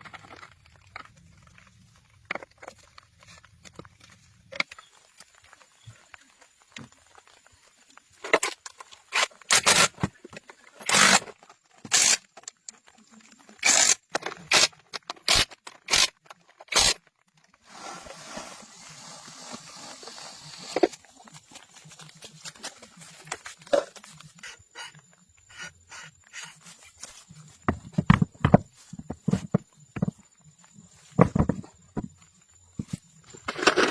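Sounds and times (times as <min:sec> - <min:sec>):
steady rough scraping: 0:17.6 - 0:21.0
loud scraping strokes: 0:17.7 - 0:20.9.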